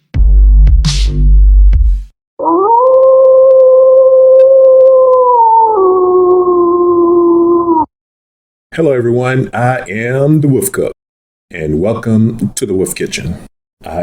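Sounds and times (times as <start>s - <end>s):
wolf howling: 2.4s - 7.9s.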